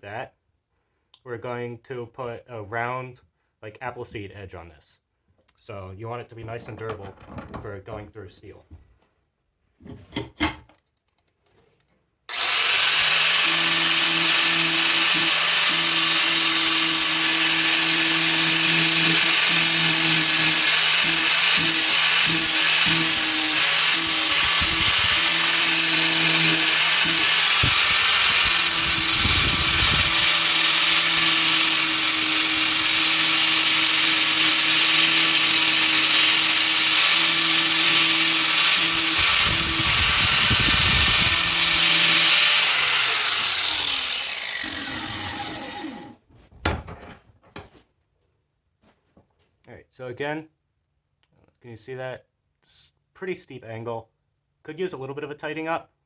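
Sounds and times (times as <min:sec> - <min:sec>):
power grinder grinding steel: 0:12.3 - 0:46.2.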